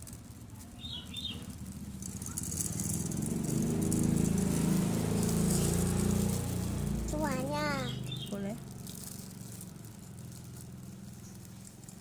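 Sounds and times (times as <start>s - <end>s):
birdseed rattling into a cup: 0.0s - 6.8s, 7.6s - 12.0s.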